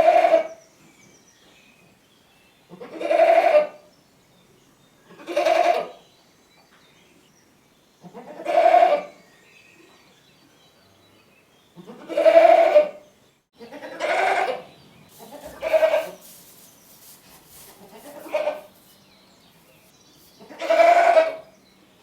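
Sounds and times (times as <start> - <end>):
goat bleating: 11.8 - 13.0, 13.6 - 14.6, 15.2 - 16.2, 17.8 - 18.8, 20.4 - 21.4.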